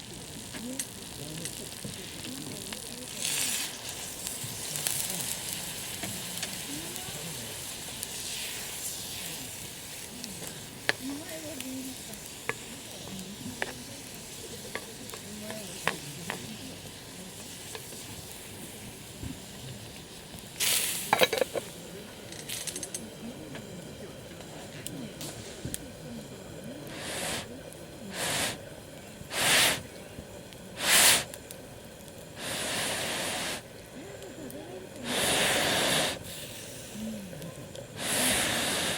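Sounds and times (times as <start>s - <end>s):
food sizzling in a skillet: 0.0s - 38.9s.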